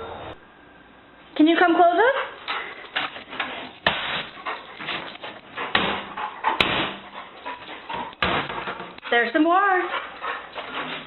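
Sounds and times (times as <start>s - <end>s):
knocking and scuffling: 2.8s - 9.4s.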